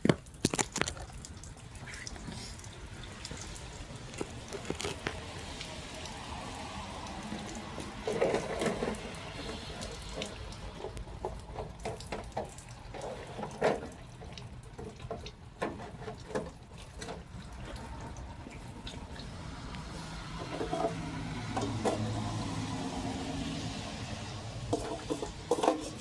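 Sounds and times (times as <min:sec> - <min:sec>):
small clicks and knocks: 0:00.0 - 0:05.6, 0:09.8 - 0:22.2
water running and splashing: 0:00.0 - 0:26.0
rustling: 0:03.9 - 0:05.4.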